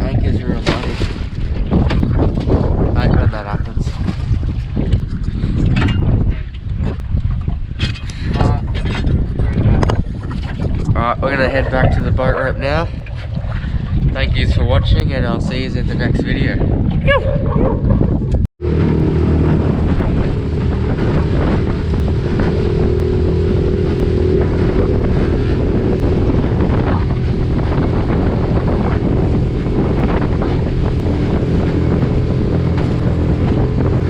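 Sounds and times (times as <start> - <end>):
wind buffeting microphone: 0.0 - 34.0
outboard motor running: 18.6 - 34.0.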